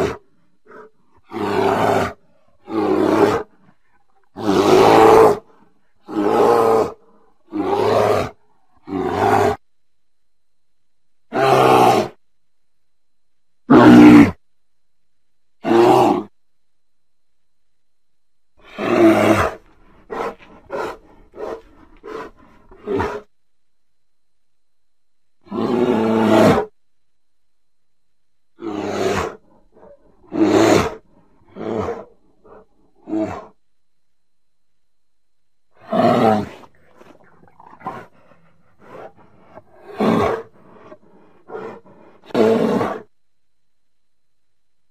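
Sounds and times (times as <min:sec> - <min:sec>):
bear growling: 0:00.0 - 0:09.6, 0:13.7 - 0:14.4, 0:15.6 - 0:16.3, 0:18.6 - 0:23.3, 0:25.4 - 0:26.8, 0:28.6 - 0:33.6, 0:35.7 - 0:43.1
bear roaring: 0:00.0 - 0:09.6, 0:11.3 - 0:12.2, 0:13.7 - 0:14.4, 0:15.6 - 0:16.3, 0:18.6 - 0:23.3, 0:25.4 - 0:26.8, 0:28.6 - 0:33.6, 0:35.8 - 0:43.1.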